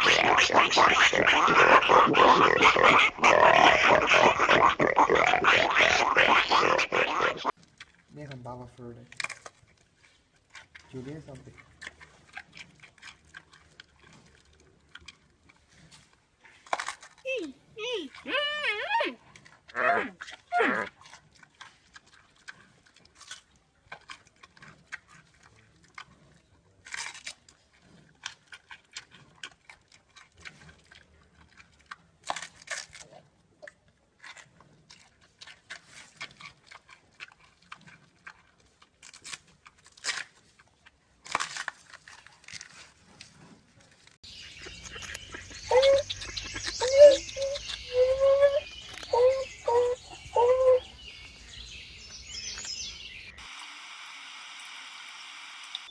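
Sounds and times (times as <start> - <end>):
short repeated animal calls: 44.3 - 51.4.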